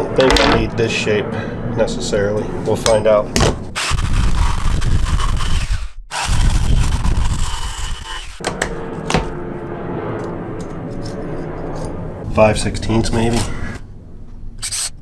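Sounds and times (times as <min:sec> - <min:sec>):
handling noise: 0:00.1 - 0:00.9
sharp knocks: 0:00.2 - 0:00.8, 0:03.4 - 0:03.7
jigsaw cutting wood: 0:03.8 - 0:08.4.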